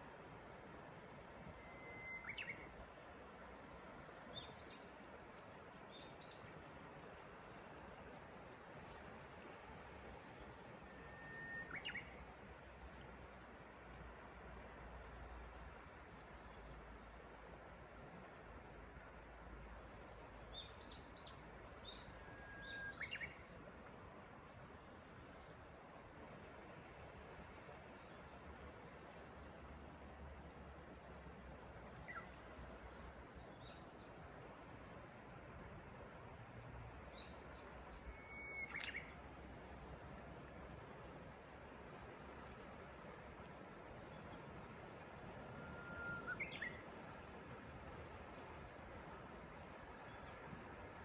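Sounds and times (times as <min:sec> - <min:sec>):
faint steady hiss: 0:00.0 - 0:51.0
bush warbler song: 0:01.2 - 0:17.6, 0:19.1 - 0:23.8, 0:30.9 - 0:35.6, 0:37.0 - 0:40.5, 0:41.6 - 0:51.0
bird singing whistled notes: 0:01.5 - 0:02.8, 0:10.8 - 0:12.2, 0:20.5 - 0:23.5, 0:32.0 - 0:32.4, 0:37.1 - 0:39.2, 0:45.6 - 0:46.9
short high bird chirps: 0:01.6 - 0:02.6, 0:37.9 - 0:39.1.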